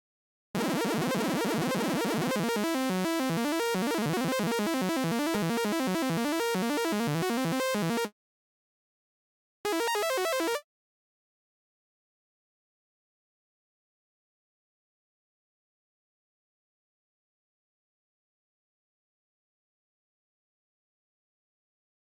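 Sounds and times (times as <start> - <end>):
glitchy synthesizer arpeggio: 0.6 - 8.1, 9.7 - 10.6.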